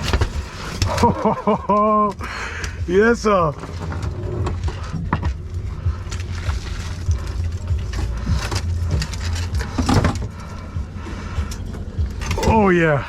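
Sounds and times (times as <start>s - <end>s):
boat engine idling: 0.0s - 13.0s.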